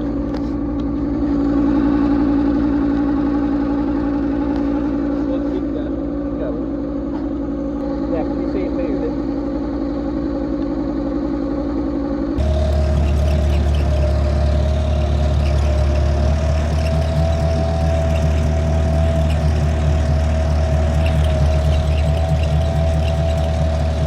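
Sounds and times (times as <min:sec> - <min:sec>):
tractor engine running: 0:12.4 - 0:24.0.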